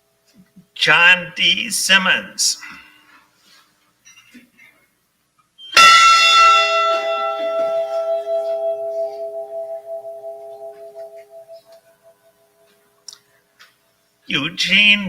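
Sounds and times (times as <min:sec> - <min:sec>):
large bell tolling: 0:05.8 - 0:12.6.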